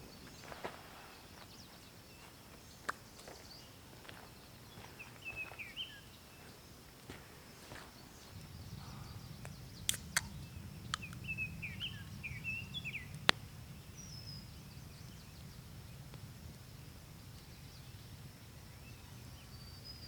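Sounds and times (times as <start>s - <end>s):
bird chirps: 4.7s - 6.6s, 7.6s - 15.5s
low steady rumble: 8.2s - 19.9s
sharp clicks: 9.8s - 11.3s.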